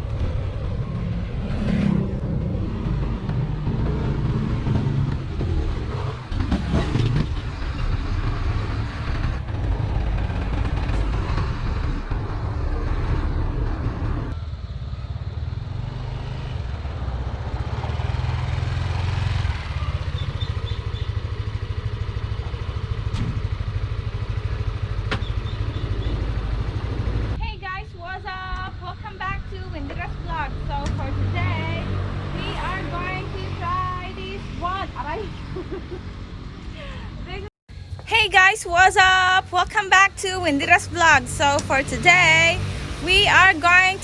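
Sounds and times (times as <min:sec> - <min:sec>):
road roller diesel engine rumble: 0:18.0 - 0:44.0.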